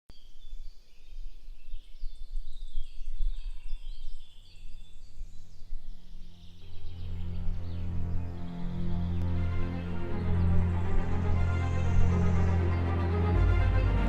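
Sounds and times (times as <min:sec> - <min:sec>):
birds singing and chirping: 0:00.1 - 0:14.0
steady low hum: 0:05.0 - 0:14.0
low uneven rumble: 0:06.4 - 0:14.0.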